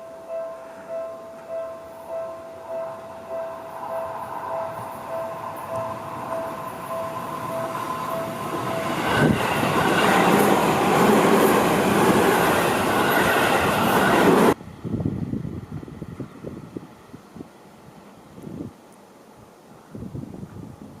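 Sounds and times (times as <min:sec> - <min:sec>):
level crossing bell ringing: 0:00.0 - 0:09.4
train wheel and rail noise: 0:00.0 - 0:20.9
wind gusts on microphone: 0:04.2 - 0:18.8, 0:19.4 - 0:21.0.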